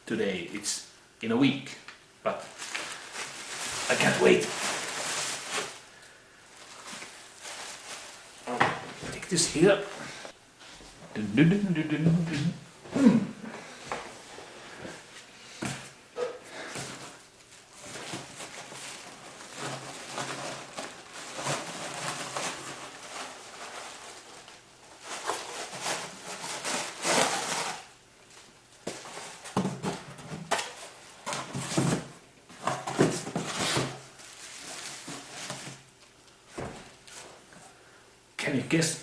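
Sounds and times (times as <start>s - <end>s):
packaging being unwrapped: 2.6s - 8.5s, 16.8s - 28.0s.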